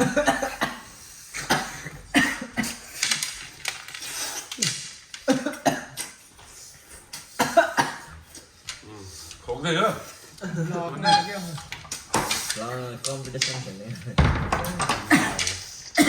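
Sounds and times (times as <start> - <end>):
person coughing: 0.0 - 2.8, 7.4 - 8.1, 15.0 - 16.0.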